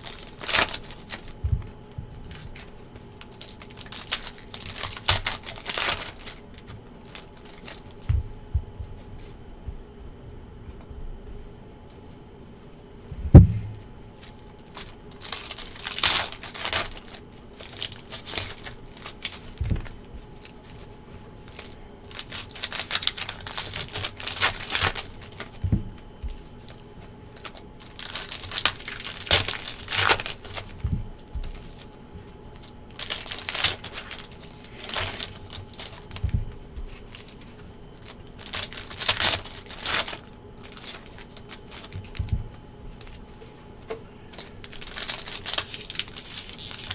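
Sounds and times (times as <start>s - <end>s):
foil wrappers crinkling and tearing: 0.0s - 9.3s, 14.1s - 46.9s
soft thuds: 8.0s - 11.2s, 13.1s - 13.9s, 25.6s - 26.4s
sharp thump: 13.2s - 13.8s.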